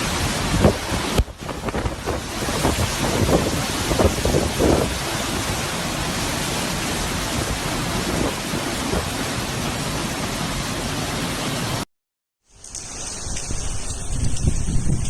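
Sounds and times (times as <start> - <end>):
wind gusts buffeting microphone: 0.0 - 10.5, 13.5 - 15.0
wind and driving rain: 0.0 - 15.0.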